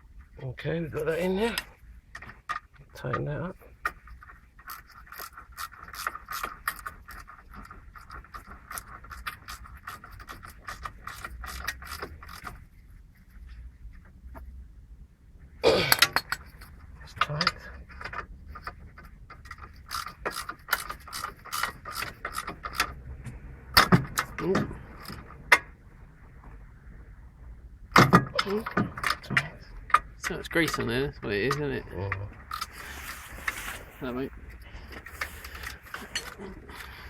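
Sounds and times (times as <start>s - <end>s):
ratchet wrench clicking: 19.5s - 22.9s
metal tool scraping: 32.5s - 37.0s.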